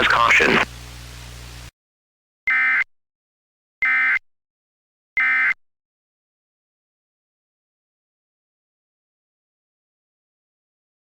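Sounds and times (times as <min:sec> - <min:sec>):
faint steady hum: 0:00.0 - 0:01.7.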